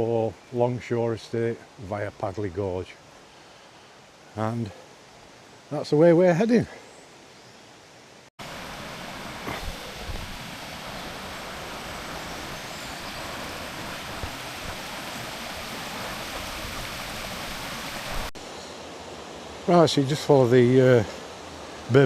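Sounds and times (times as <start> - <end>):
brook water rushing: 8.4 - 22.0.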